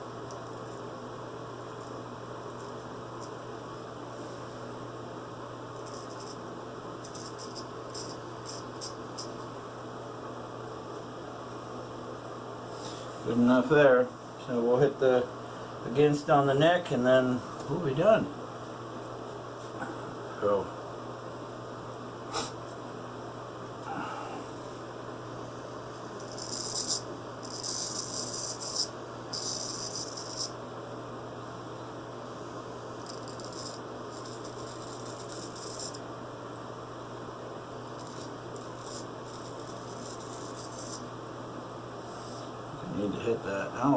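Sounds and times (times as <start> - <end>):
razor scraping stubble: 5.7 - 6.4, 7.0 - 9.4, 26.2 - 30.6, 32.9 - 36.0, 37.9 - 41.1.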